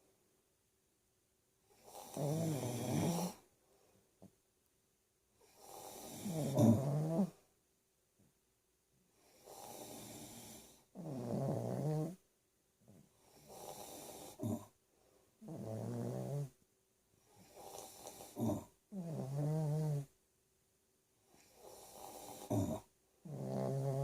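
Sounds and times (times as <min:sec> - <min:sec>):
loud pitched snoring: 0:01.8 - 0:03.4, 0:05.6 - 0:07.4, 0:09.4 - 0:12.2, 0:13.4 - 0:14.7, 0:15.4 - 0:16.6, 0:17.6 - 0:20.1, 0:21.6 - 0:24.0.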